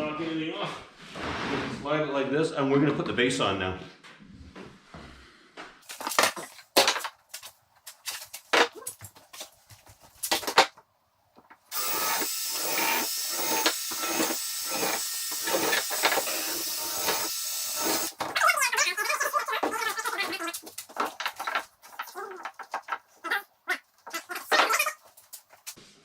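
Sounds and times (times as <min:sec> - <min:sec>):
tool rasping and scraping: 0:11.7 - 0:18.2
wooden knocks and clatter: 0:20.5 - 0:23.2.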